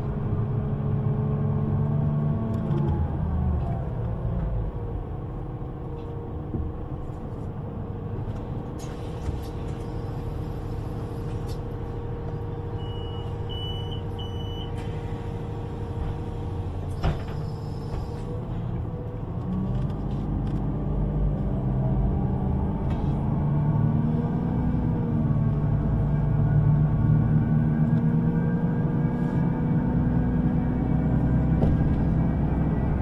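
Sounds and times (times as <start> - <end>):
train equipment rumble and hum: 0.0 - 33.0
door-warning beeps: 12.8 - 14.8
train doors closing: 16.0 - 18.4.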